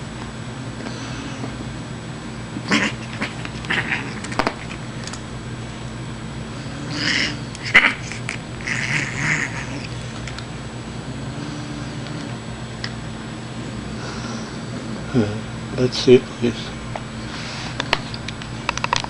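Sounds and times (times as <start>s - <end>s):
cat hissing: 2.6s - 4.8s, 6.6s - 10.0s.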